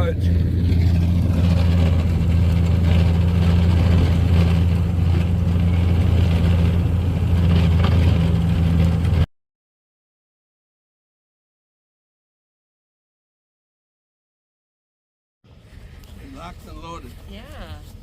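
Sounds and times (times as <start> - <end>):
tractor engine droning: 0.0 - 9.3.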